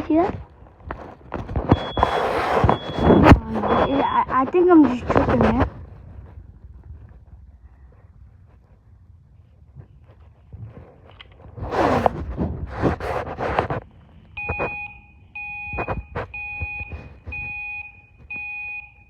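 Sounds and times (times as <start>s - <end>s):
fire alarm beeping: 1.7s - 4.3s, 14.4s - 19.0s.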